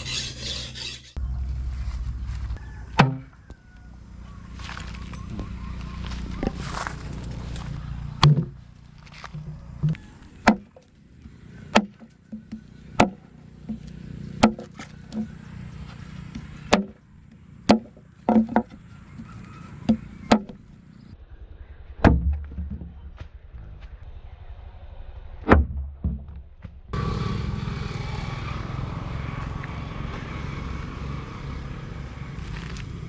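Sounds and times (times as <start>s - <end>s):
low hum: 0.0s - 33.0s
sharp chopping strikes: 3.0s - 3.4s, 9.2s - 17.0s, 17.7s - 18.8s, 19.8s - 20.6s.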